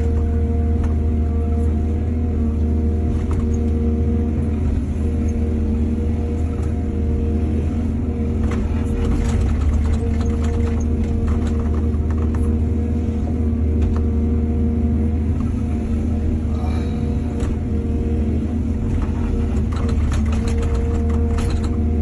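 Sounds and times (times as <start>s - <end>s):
excavator diesel engine rumbling: 0.0s - 22.0s
knocks and clatters: 8.4s - 12.6s, 18.9s - 21.9s.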